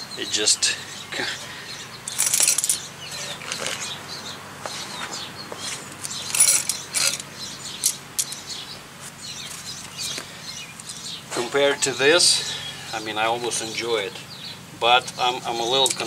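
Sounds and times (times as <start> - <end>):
metal clicks: 6.0 - 8.4.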